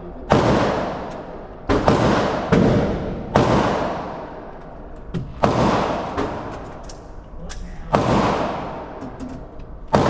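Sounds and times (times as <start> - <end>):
gunshots with echo: 0.3 - 4.6, 5.2 - 6.8, 7.9 - 9.2, 9.8 - 10.0.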